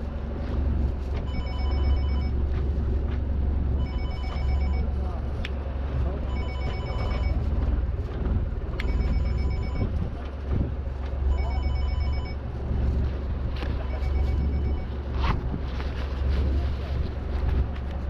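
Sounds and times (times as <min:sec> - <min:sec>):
boat engine drone: 0:00.0 - 0:18.0
electronic beeping tone: 0:01.3 - 0:02.3, 0:03.8 - 0:04.9, 0:06.3 - 0:07.4, 0:08.8 - 0:10.0, 0:11.3 - 0:12.4, 0:13.8 - 0:14.9.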